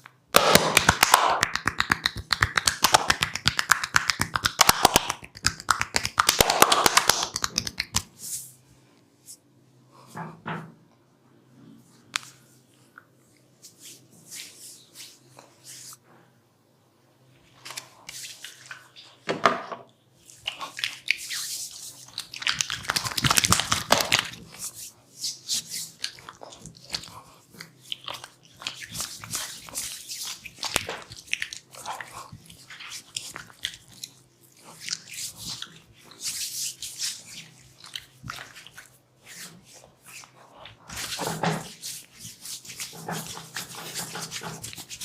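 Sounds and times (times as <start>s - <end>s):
hands massaging near microphone: 0.7s - 8.6s, 13.6s - 16.0s, 20.4s - 31.2s, 34.8s - 45.0s.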